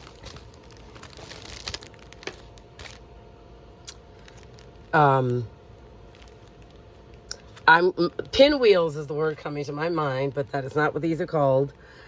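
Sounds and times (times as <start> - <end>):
packaging rustling: 0.0 - 3.1, 3.9 - 5.4, 6.0 - 7.1.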